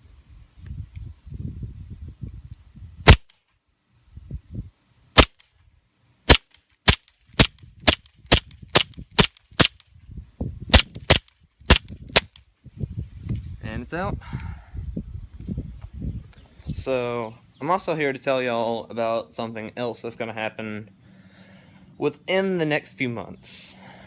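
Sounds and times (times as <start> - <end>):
airsoft pistol shots: 3.1 - 3.3, 5.2 - 5.4, 6.3 - 9.8, 10.7 - 12.4.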